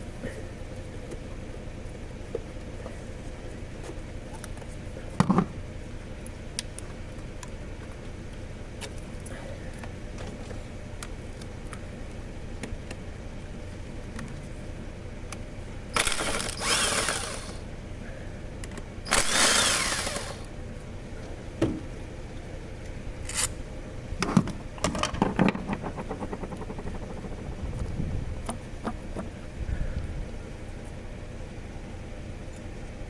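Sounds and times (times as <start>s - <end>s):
power tool running: 16.0s - 17.6s, 19.1s - 20.5s
rapid clicks: 16.0s - 17.6s, 19.1s - 20.5s, 25.4s - 29.1s.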